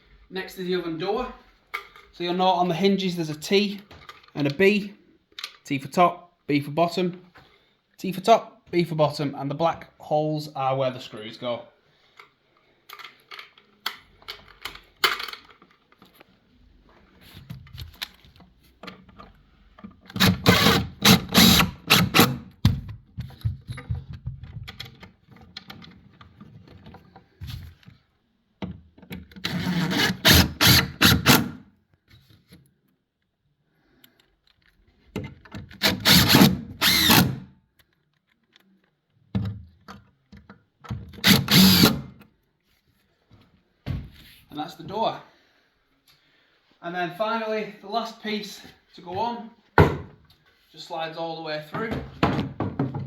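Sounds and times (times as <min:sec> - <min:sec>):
power drill driving screws: 0:20.1 - 0:22.5, 0:29.4 - 0:31.6, 0:35.8 - 0:37.5, 0:41.2 - 0:42.2.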